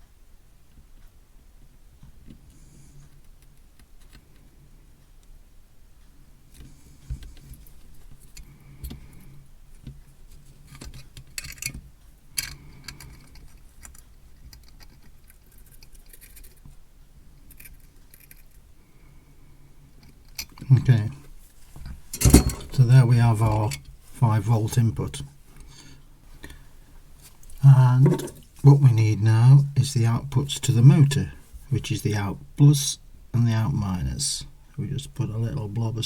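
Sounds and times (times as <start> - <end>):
faint low hum: 0.0 - 36.0
tools clicking and clinking: 22.1 - 22.8.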